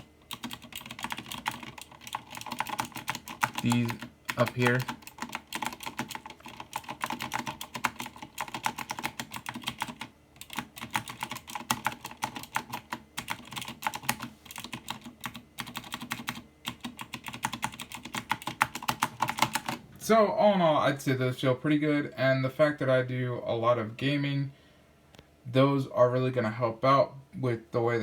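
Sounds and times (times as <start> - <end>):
mechanical keyboard typing: 0.0 - 19.8.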